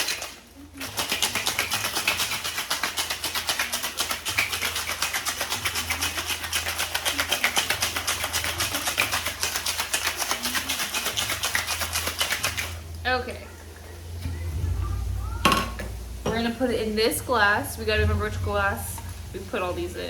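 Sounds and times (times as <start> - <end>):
ice rattling in cocktail shaker: 0.0 - 12.8.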